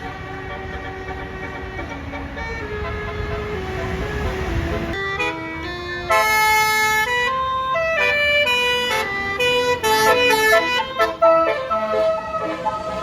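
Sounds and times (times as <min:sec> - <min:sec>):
musical air horn melody: 0:00.0 - 0:07.2, 0:08.0 - 0:13.0.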